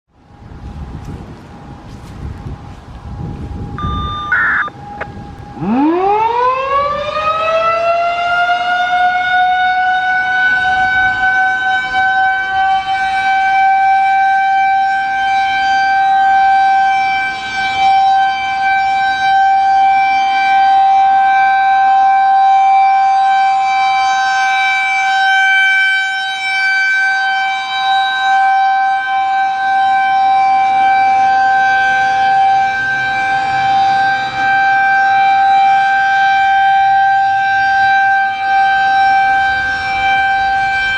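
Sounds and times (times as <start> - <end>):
outdoor warning siren: 0.1 - 40.9.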